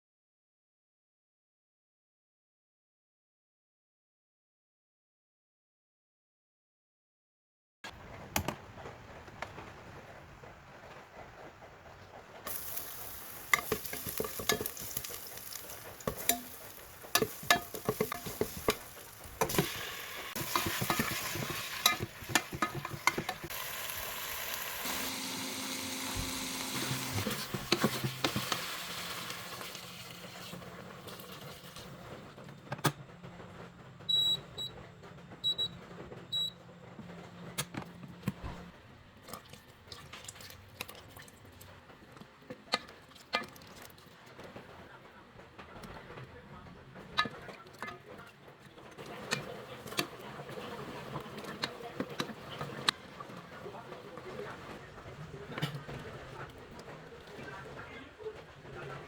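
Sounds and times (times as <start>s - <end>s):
food sizzling in hot oil: 12.5s - 31.6s
utensil clinking and scraping pot: 12.5s - 32.0s.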